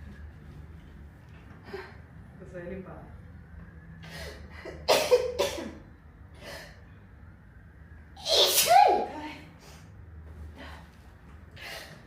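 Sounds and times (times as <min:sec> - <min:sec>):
girl sneezing: 0:04.9 - 0:05.8, 0:08.2 - 0:09.1.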